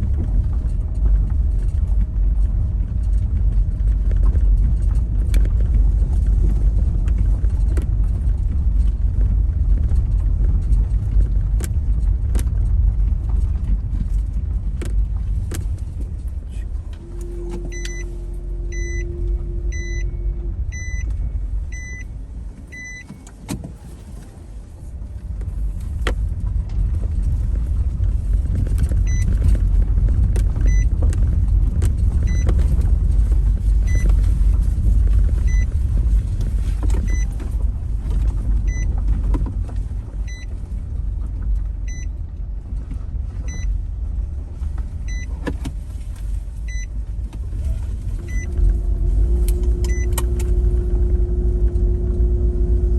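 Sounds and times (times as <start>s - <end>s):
car road and engine rumble: 0.0s - 52.9s
short electronic beeps: 17.0s - 22.1s, 22.7s - 23.2s, 32.3s - 32.5s.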